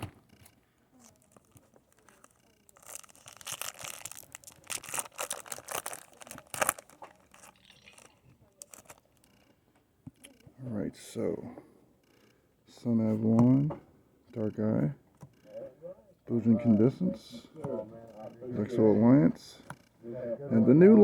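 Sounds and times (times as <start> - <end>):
foil wrapper tearing and crinkling: 1.0 - 9.0.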